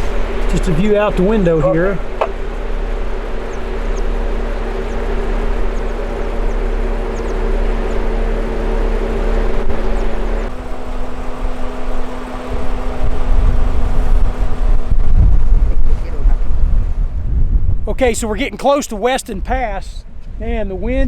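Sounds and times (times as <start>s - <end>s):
car engine droning: 0.0s - 17.2s
wind rush: 0.0s - 18.6s.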